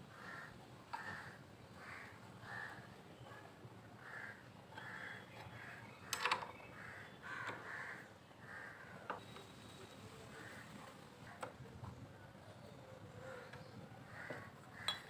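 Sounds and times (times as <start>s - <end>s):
crows cawing: 0.1s - 2.9s, 4.0s - 5.8s, 6.8s - 9.2s, 10.4s - 10.7s, 13.4s - 15.0s.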